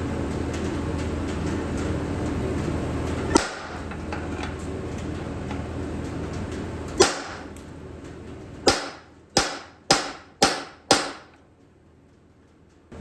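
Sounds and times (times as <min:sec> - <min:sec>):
hammer striking steel punch: 0:03.3 - 0:03.8, 0:07.0 - 0:07.5, 0:08.7 - 0:11.4.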